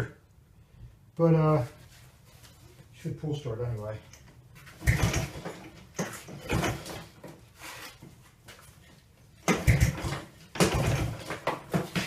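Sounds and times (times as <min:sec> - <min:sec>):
pull starter rasping rattle: 0:04.8 - 0:07.2, 0:09.4 - 0:12.0.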